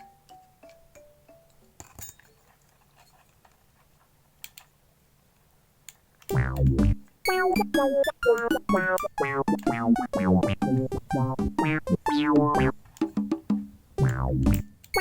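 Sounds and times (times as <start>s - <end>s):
tone sliding down in pitch: 6.3s - 12.7s
electronic keyboard notes: 6.3s - 12.8s, 14.0s - 15.0s.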